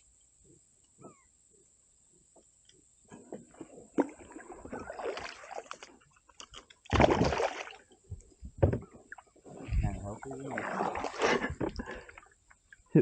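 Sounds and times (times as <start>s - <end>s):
clicks and knocks in kayak: 5.7s - 7.0s, 7.9s - 9.2s.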